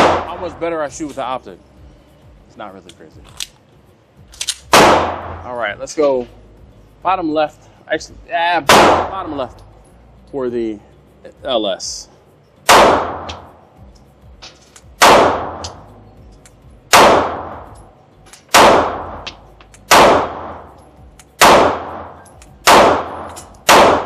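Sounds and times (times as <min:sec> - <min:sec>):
pistol shots with echo: 0:00.0 - 0:00.5, 0:04.7 - 0:05.4, 0:08.7 - 0:09.2, 0:12.7 - 0:13.5, 0:15.0 - 0:15.8, 0:16.9 - 0:17.7, 0:18.5 - 0:20.7, 0:21.4 - 0:24.0.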